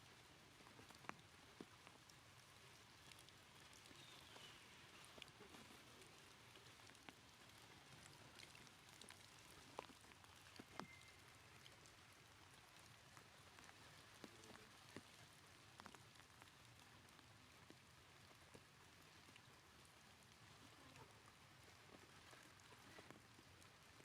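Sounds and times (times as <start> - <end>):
faint steady hiss: 0.0 - 24.0
soft ticks and clicks: 0.1 - 24.0
faint high chirp: 10.7 - 11.8.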